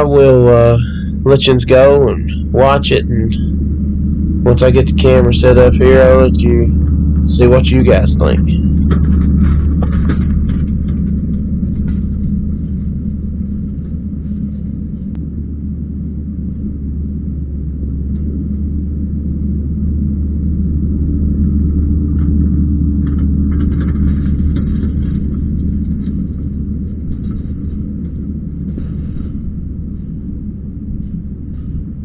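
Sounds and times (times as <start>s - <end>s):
diesel engine rumbling: 0.0s - 32.0s
faint clatter: 4.5s - 15.3s, 22.1s - 32.0s.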